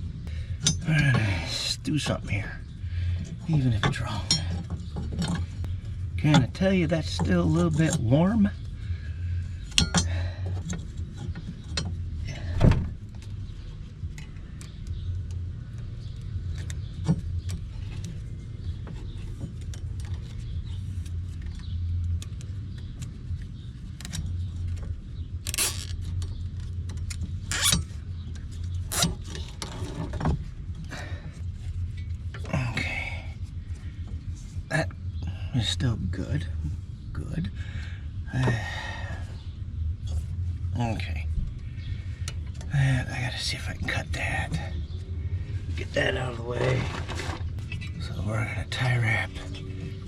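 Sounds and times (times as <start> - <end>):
steady low hum: 0.0 - 50.0
metal tools clinking: 25.5 - 26.0.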